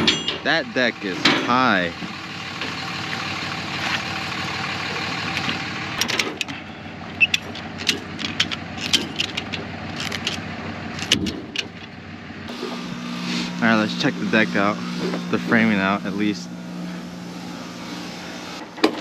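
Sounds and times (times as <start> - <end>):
vehicle engine idling: 0.0 - 19.0
sharp clicks and knocks: 5.3 - 6.6, 7.2 - 10.4, 11.0 - 12.0.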